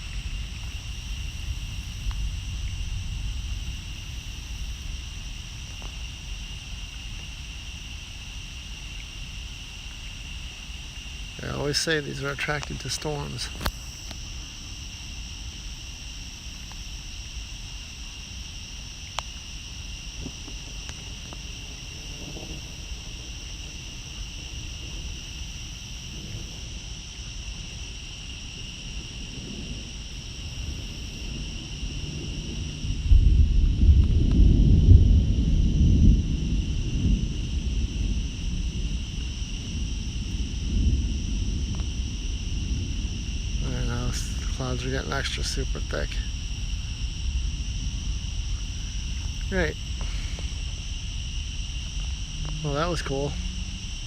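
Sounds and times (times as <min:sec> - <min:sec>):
low rumble: 0:00.0 - 0:07.8, 0:30.5 - 0:54.0
night insects trilling: 0:00.0 - 0:54.0
faint ticks: 0:02.0 - 0:02.3, 0:19.1 - 0:19.4.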